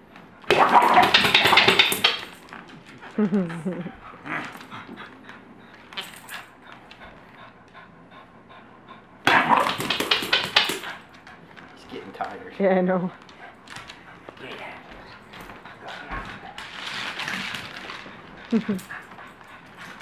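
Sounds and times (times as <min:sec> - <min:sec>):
dog clattering a bowling pin: 0:00.5 - 0:02.4, 0:09.3 - 0:11.0
dog vocal sound: 0:09.3 - 0:11.1.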